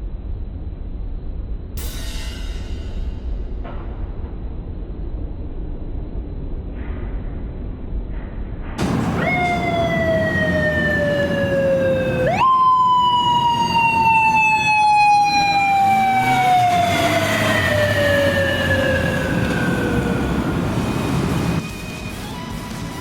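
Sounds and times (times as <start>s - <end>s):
police motorcycle siren wailing: 8.8s - 21.6s.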